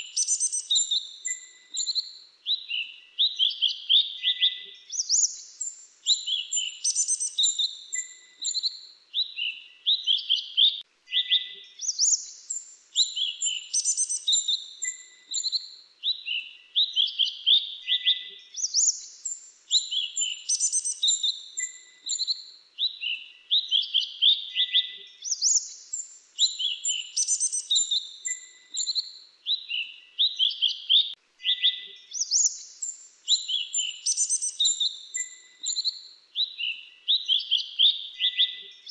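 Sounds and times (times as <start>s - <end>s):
bird song high sliding chirps: 0.0s - 3.6s, 4.2s - 9.5s, 11.1s - 15.7s, 18.0s - 22.4s, 24.6s - 36.0s.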